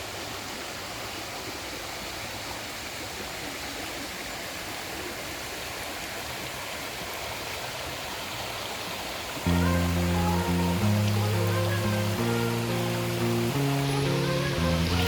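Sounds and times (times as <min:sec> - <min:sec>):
heavy rain falling: 0:09.4 - 0:15.0.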